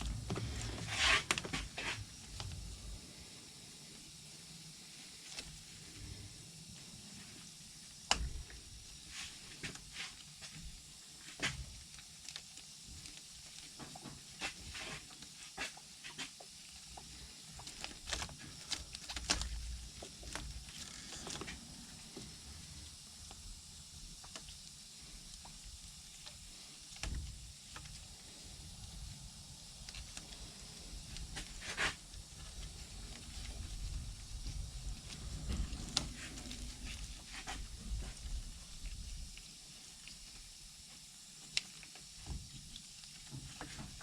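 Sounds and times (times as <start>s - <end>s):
plastic netting clicks and rubbing: 17.5s - 21.6s.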